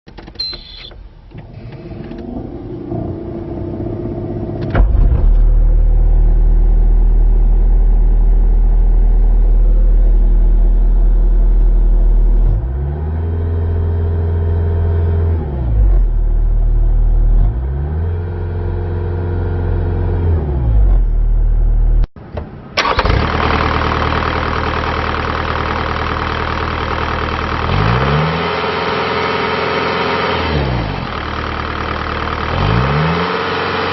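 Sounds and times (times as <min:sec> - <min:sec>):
diesel engine cranking and running: 0:22.8 - 0:33.9
engine revving: 0:22.8 - 0:33.9.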